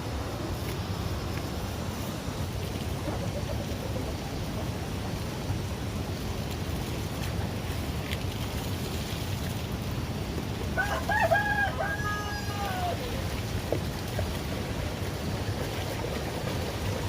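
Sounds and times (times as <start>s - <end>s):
rooster crowing: 10.8s - 13.2s.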